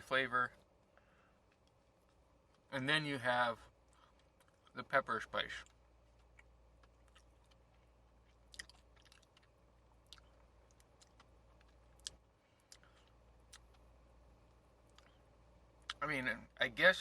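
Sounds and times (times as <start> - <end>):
low steady hum: 0.0 - 17.0
soft chewing clicks: 0.5 - 2.8, 3.6 - 16.0.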